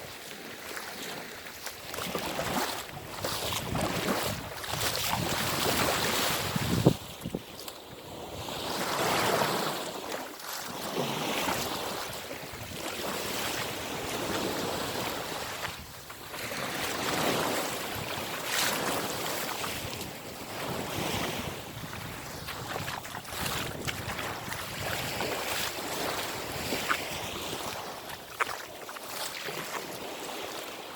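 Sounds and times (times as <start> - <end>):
sea waves washing ashore: 0.0 - 30.9
wind buffeting microphone: 2.9 - 7.5, 19.8 - 27.9.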